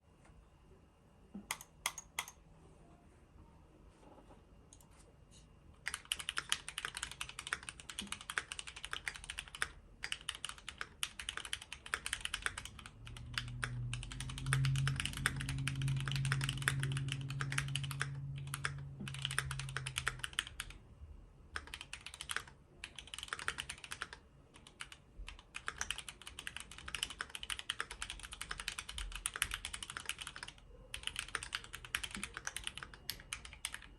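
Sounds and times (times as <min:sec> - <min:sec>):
mechanical keyboard typing: 0:01.5 - 0:02.4, 0:05.8 - 0:20.8, 0:21.5 - 0:33.9
low hum: 0:12.3 - 0:21.5.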